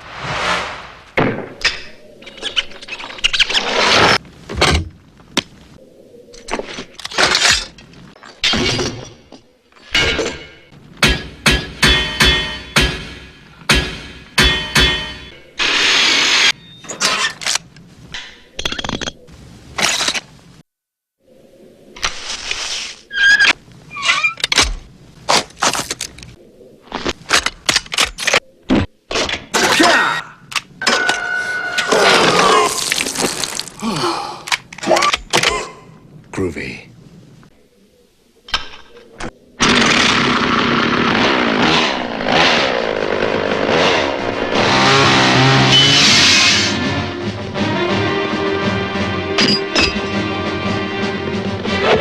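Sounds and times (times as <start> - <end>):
crashing and breaking: 31.8 - 33.9.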